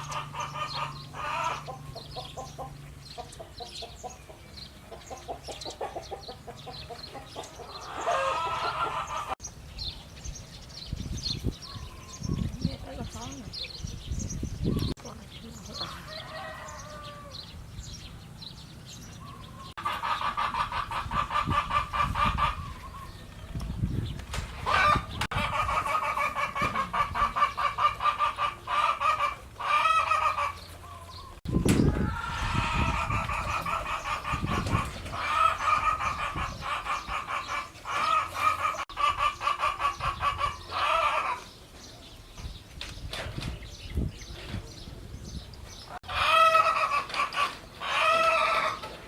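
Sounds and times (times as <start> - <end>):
farm animals pulsing calls: 32.0 - 41.6, 45.9 - 49.0.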